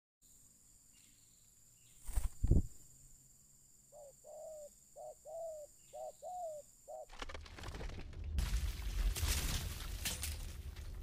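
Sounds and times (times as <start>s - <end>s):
dove cooing: 3.9s - 7.1s.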